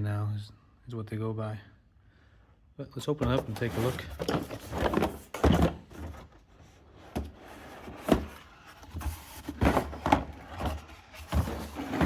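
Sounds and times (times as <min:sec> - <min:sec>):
cardboard box being handled: 0:03.2 - 0:12.0.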